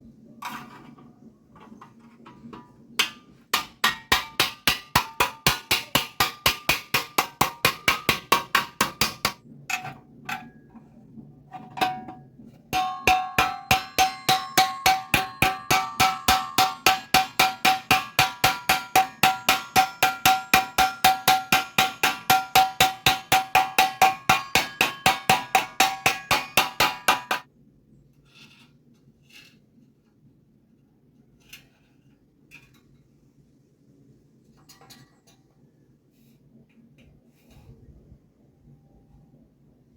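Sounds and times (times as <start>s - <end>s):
hammer striking steel tube: 3.0s - 10.6s, 11.8s - 27.5s.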